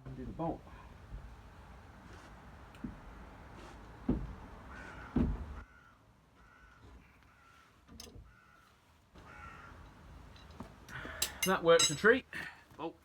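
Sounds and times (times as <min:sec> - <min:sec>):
crow cawing: 0:04.7 - 0:10.0.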